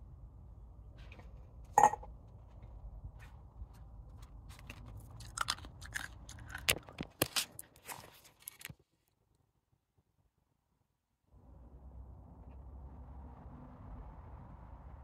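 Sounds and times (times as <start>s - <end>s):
person chewing crunchy food: 4.5s - 8.7s.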